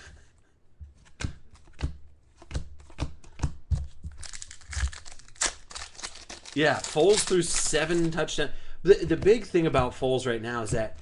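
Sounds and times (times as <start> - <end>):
trading cards flipped by hand: 1.0 - 8.3.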